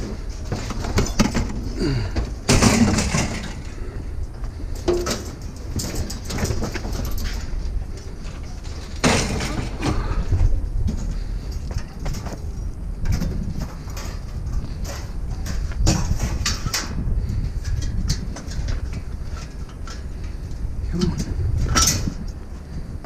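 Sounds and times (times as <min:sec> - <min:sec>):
metal scrap clattering: 0:00.3 - 0:03.8, 0:04.8 - 0:07.6, 0:08.3 - 0:10.3, 0:13.0 - 0:17.0.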